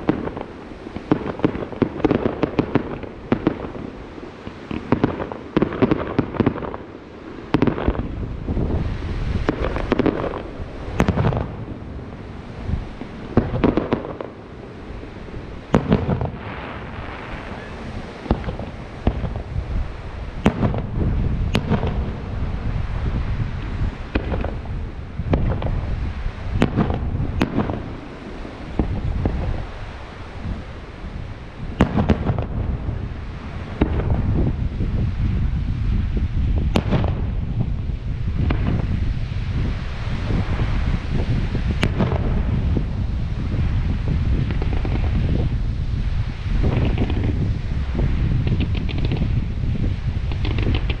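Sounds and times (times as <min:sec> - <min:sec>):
fireworks bursting in sharp bangs: 0:00.0 - 0:51.0
low rumble of echoing bursts: 0:06.6 - 0:51.0
firework shells bursting: 0:15.7 - 0:19.5, 0:44.3 - 0:45.6, 0:46.6 - 0:47.5, 0:48.3 - 0:49.5, 0:50.2 - 0:51.0.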